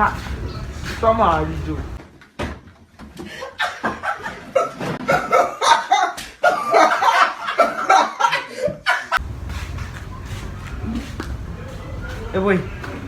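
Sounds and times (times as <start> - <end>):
people laughing hard: 3.3 - 9.2.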